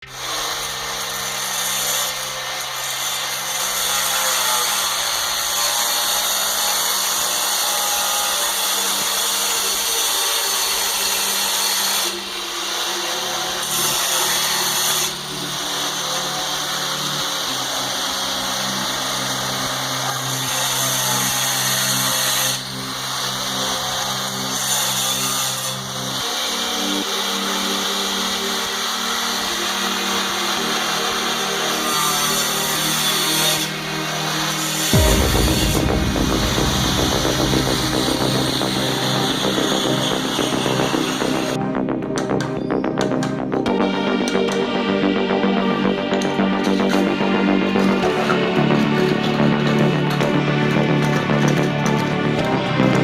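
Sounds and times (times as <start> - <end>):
power tool running under load: 0.0 - 41.6.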